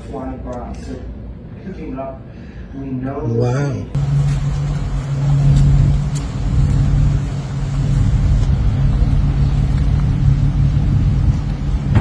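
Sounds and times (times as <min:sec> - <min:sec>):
road noise: 0:03.6 - 0:12.0
car engine rumble: 0:03.9 - 0:12.0.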